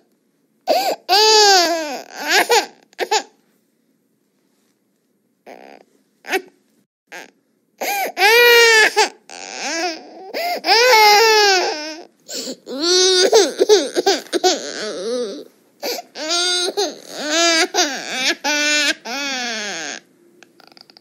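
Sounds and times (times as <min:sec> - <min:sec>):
baby wailing: 0:00.7 - 0:03.3, 0:05.5 - 0:06.5, 0:07.1 - 0:20.0.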